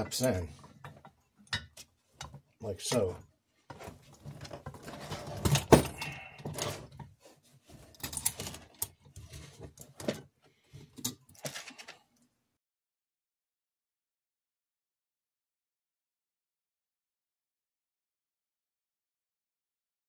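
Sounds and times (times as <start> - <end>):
plastic parts clicking and knocking: 0.6 - 12.3.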